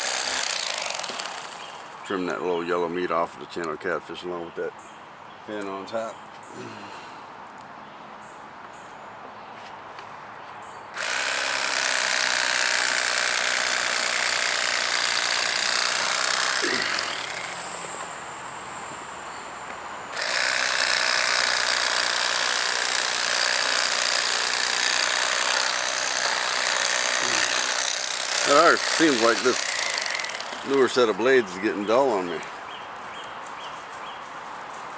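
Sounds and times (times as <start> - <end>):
electric fillet knife running: 11.0 - 18.1, 20.1 - 30.8.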